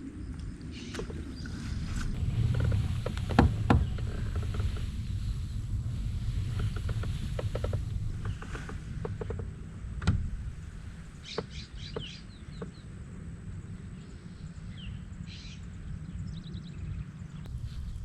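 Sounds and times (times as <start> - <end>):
steady low rumble: 0.0 - 18.0
sharp knocks: 2.5 - 4.7
small birds chirping: 11.1 - 12.9.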